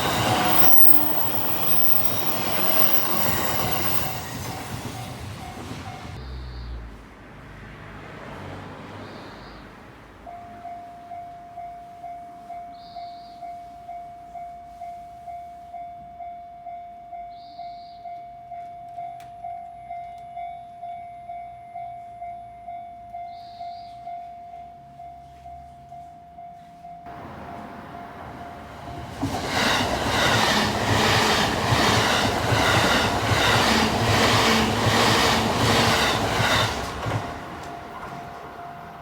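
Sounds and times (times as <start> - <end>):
train clattering over rails: 0.0 - 6.2, 27.1 - 39.0.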